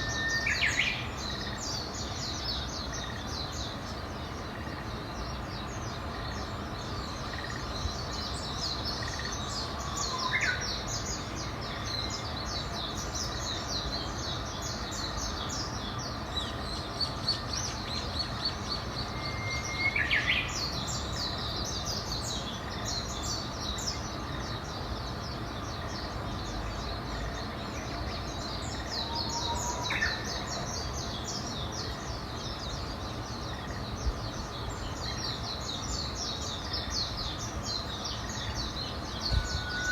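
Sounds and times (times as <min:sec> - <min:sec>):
birds chirping: 0:00.0 - 0:39.9
outdoor background hiss: 0:00.0 - 0:39.9
loud sweeping bird call: 0:28.8 - 0:31.2, 0:38.4 - 0:39.9.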